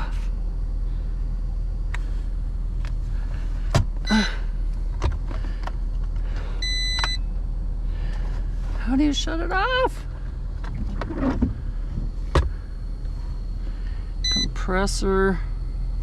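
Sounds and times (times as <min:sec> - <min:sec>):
steady low hum: 0:00.0 - 0:16.0
short electronic beep: 0:06.6 - 0:07.3, 0:14.2 - 0:14.6.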